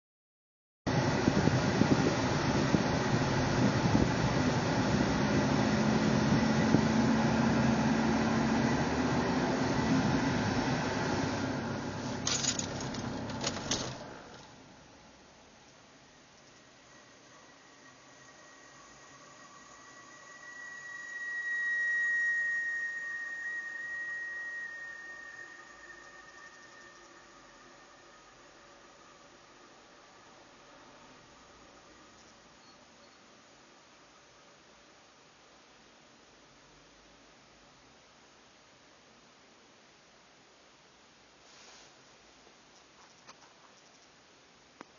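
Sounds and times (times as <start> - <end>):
air conditioning rushing noise: 0.9 - 31.7
faint low hum: 0.9 - 44.9
low steady tone: 14.6 - 35.0.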